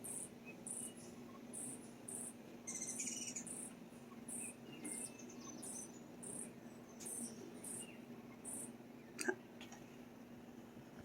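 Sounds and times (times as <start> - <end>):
bird chirps: 0.0 - 8.7
insect chirping: 0.0 - 8.7.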